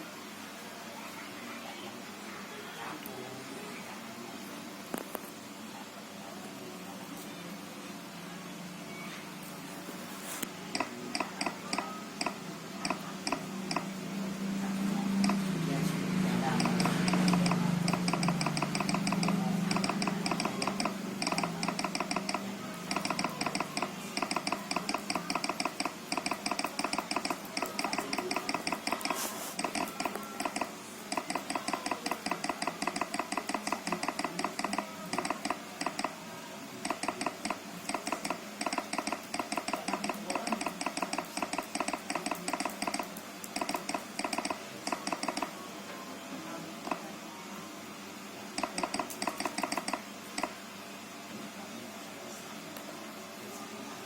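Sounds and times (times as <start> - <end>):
laptop keyboard typing: 10.7 - 14.0, 15.2 - 15.5, 16.4 - 36.2, 36.8 - 45.6, 46.8 - 47.1, 48.6 - 50.6.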